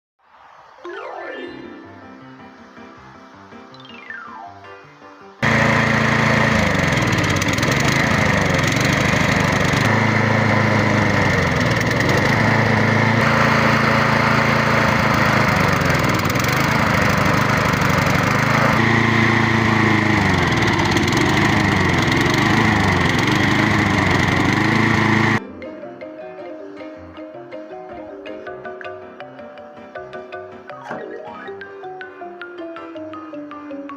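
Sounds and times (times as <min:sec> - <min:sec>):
lawn mower engine running: 0:05.4 - 0:25.4.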